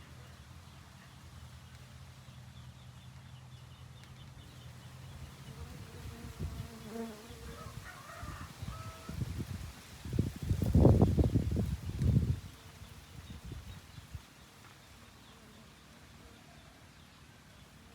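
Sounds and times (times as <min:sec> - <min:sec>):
honeybees buzzing: 0:04.7 - 0:09.5.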